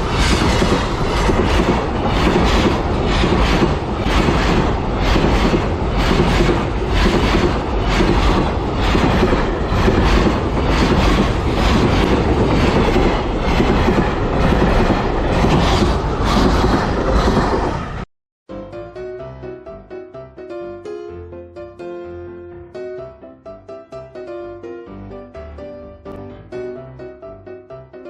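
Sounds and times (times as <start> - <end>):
wheels clacking over rail joints: 0.0 - 17.8
freight train passing: 0.0 - 18.1.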